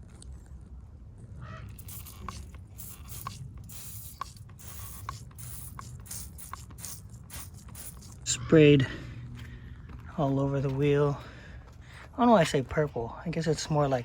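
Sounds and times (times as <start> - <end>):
spray bottle trigger click and hiss: 1.8 - 8.2.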